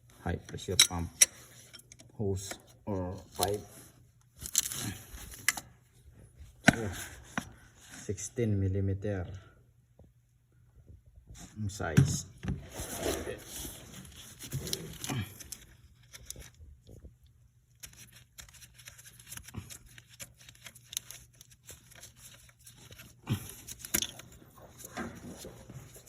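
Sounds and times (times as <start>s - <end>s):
hand tools clicking and scraping: 0.5s - 2.6s.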